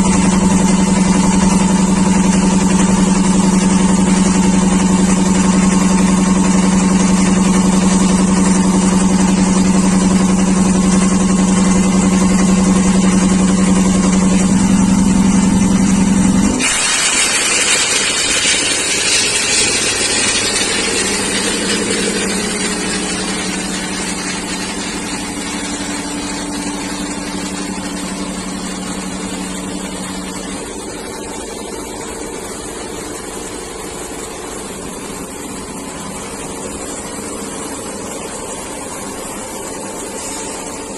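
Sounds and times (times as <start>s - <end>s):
air compressor humming: 0.0s - 40.9s
loud air hiss: 16.6s - 31.1s, 39.9s - 40.9s.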